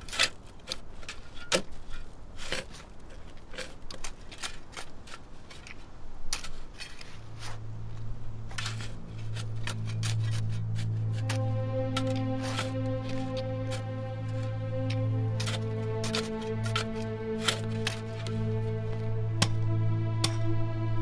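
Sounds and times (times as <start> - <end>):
low music drone: 7.1 - 21.0.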